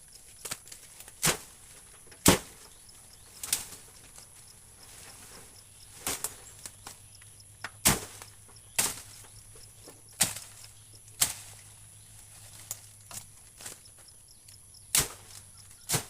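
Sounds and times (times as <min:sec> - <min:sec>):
hand tool striking wood: 0:07.6 - 0:08.2.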